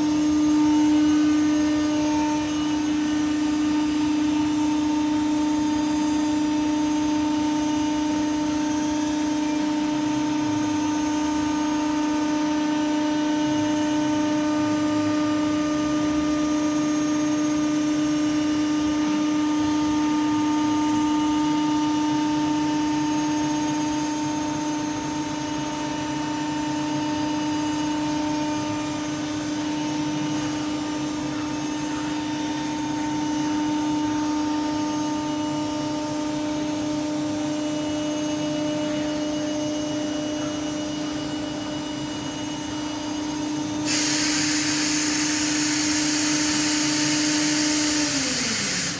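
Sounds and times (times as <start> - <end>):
router machine whine: 0.0 - 48.9.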